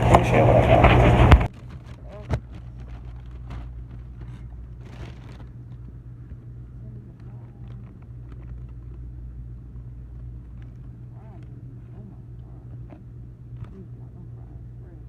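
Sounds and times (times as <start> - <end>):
faint rustling: 0.0 - 15.0
low mechanical hum: 0.0 - 15.0.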